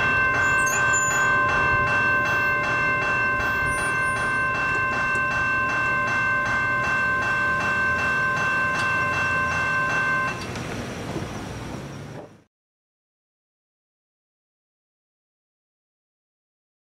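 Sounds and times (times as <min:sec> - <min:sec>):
railway crossing bell ringing: 0:00.0 - 0:12.1
passing train rumble: 0:00.0 - 0:12.5.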